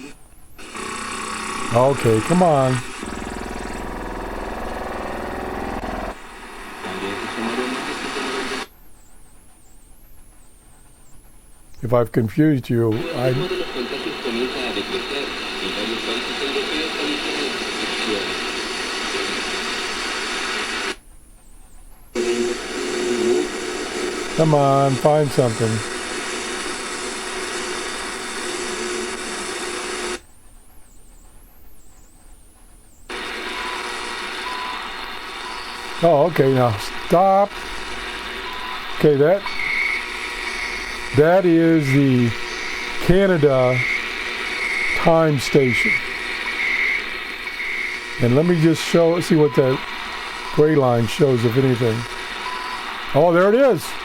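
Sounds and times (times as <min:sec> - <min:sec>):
faint radio hiss: 0:00.0 - 0:00.8, 0:01.4 - 0:04.9, 0:05.6 - 0:54.0
radio warbling tones: 0:00.0 - 0:08.7, 0:12.9 - 0:21.0, 0:22.2 - 0:30.2, 0:33.1 - 0:54.0
buzzing radio signal: 0:00.0 - 0:08.8, 0:12.8 - 0:21.0, 0:22.2 - 0:30.2, 0:33.1 - 0:54.0.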